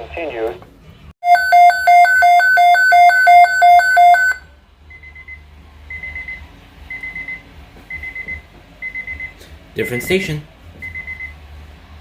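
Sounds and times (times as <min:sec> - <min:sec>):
radio alert alarm: 0:01.2 - 0:04.4.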